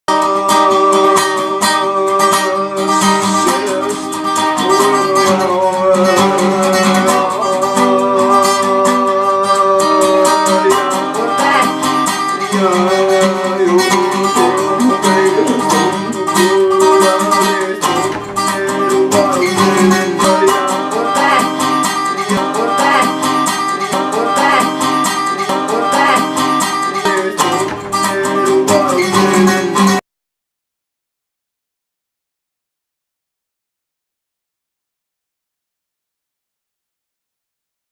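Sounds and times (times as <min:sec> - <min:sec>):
acoustic guitar music: 0:00.1 - 0:30.0.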